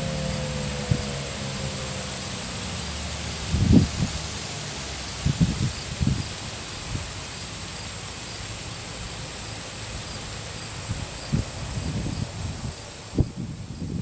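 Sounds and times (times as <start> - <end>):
wind rumbling on microphone: 0.0 - 7.4, 10.6 - 14.0
faint hiss: 0.0 - 14.0
steady high-pitched whine: 0.0 - 14.0.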